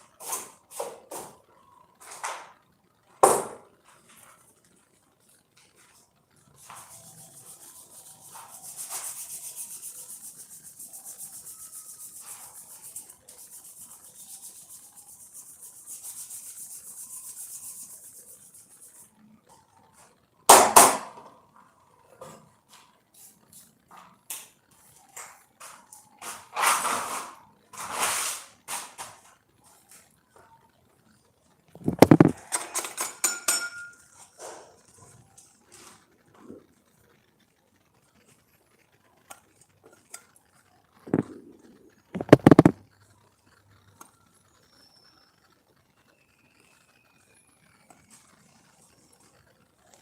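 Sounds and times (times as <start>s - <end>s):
rapid hand sanding: 6.6s - 19.1s.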